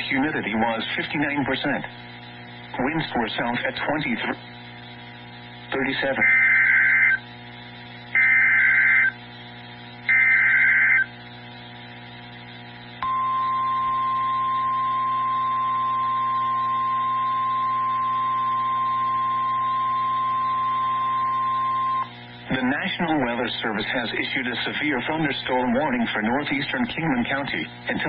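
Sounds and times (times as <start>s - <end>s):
warbling data tones: 5.8s - 7.3s, 8.1s - 9.2s, 10.1s - 11.2s
steady alarm tone: 6.1s - 7.2s, 8.1s - 9.2s, 10.1s - 11.1s, 13.0s - 22.1s.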